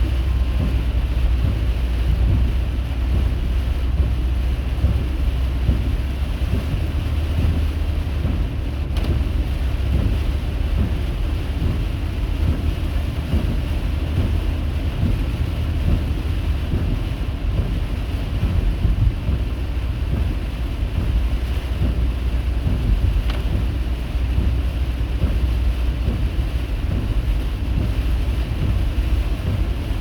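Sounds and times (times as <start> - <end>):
car driving rumble and hiss: 0.0 - 30.0.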